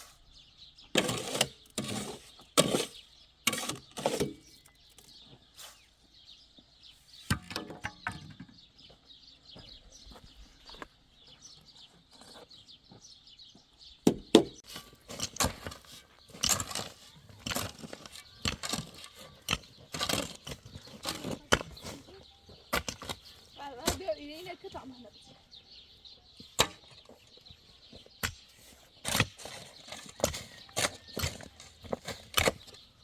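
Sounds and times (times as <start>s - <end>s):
knocks and scrapes of manual work: 0.8s - 6.0s, 7.1s - 8.9s, 14.0s - 33.0s.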